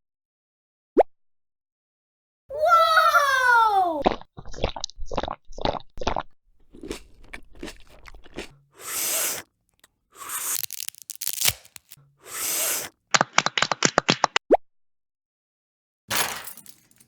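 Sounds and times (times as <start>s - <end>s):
short crunches: 10.2s - 12.0s.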